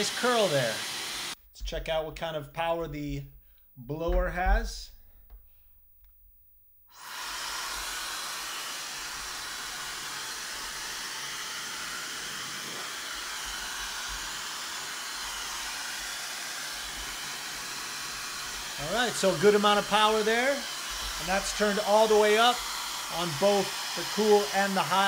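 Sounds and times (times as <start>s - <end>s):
hair dryer brush blowing: 0.0s - 1.4s, 6.9s - 25.0s.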